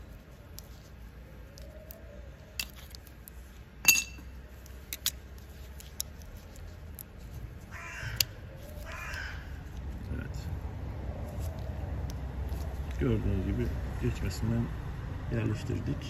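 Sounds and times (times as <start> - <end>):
sharp ringing metal clink: 3.8 - 4.3
harsh rasping calls: 7.6 - 9.7.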